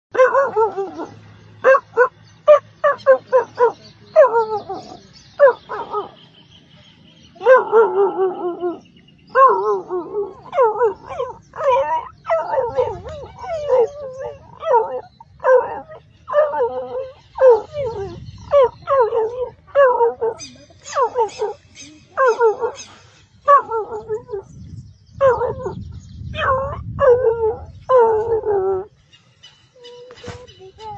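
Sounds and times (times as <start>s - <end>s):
dog yipping: 0.2s - 6.1s, 9.4s - 24.2s, 26.4s - 28.9s
dog whine-howling: 7.4s - 21.6s, 26.4s - 28.9s.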